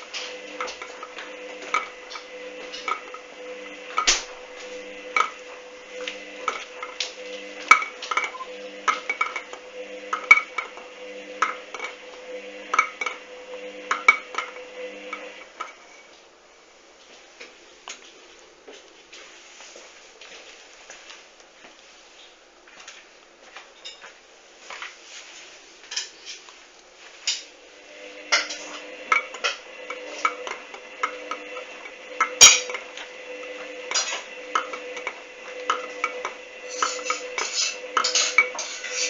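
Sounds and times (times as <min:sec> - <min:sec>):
washing machine motor whining: 0:00.0 - 0:16.2, 0:27.3 - 0:39.0.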